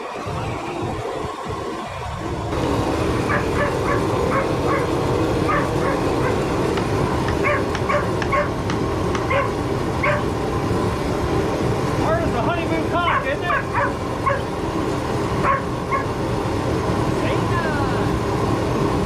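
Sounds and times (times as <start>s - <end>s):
low mechanical rumble: 0.0s - 19.0s
dog barking and yipping: 3.2s - 6.4s, 7.4s - 8.6s, 9.3s - 10.3s, 13.1s - 14.5s, 15.4s - 16.1s.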